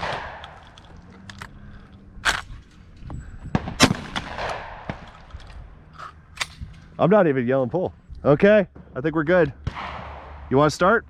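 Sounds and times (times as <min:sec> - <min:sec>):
shotgun shots with echo: 0:00.0 - 0:00.6, 0:03.6 - 0:05.1, 0:09.6 - 0:10.5.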